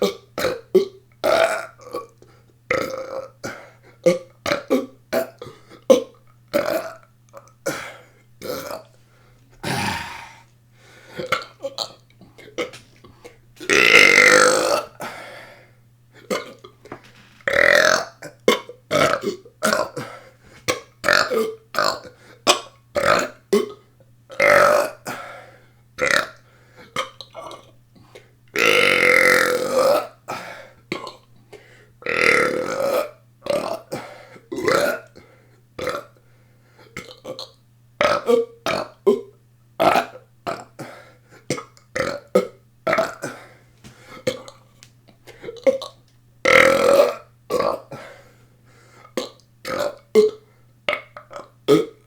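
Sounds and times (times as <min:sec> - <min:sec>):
person belching: 0:00.0 - 0:07.8, 0:08.4 - 0:08.9, 0:09.6 - 0:10.5, 0:11.2 - 0:12.9, 0:13.6 - 0:15.1, 0:16.3 - 0:20.1, 0:21.0 - 0:25.0, 0:34.5 - 0:35.1, 0:41.5 - 0:43.4, 0:45.4 - 0:47.9, 0:49.2 - 0:52.0.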